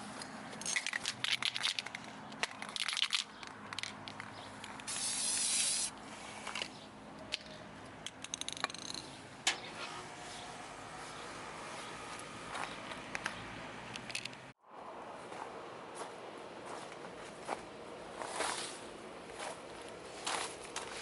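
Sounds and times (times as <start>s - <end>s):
even hiss: 4.9s - 6.4s
crackling rustling handling noises: 18.2s - 21.0s.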